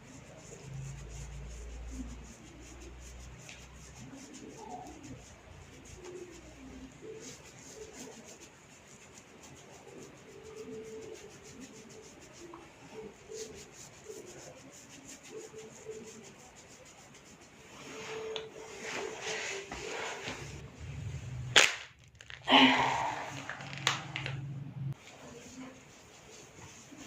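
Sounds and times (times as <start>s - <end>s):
fingers rubbing through hair: 0.0s - 20.7s, 25.0s - 27.0s.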